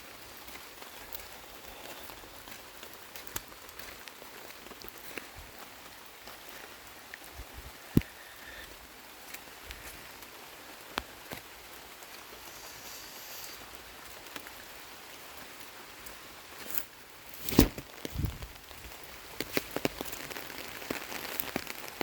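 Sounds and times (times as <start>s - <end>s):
light rain hiss: 0.0s - 22.0s
raindrops tapping: 17.7s - 22.0s.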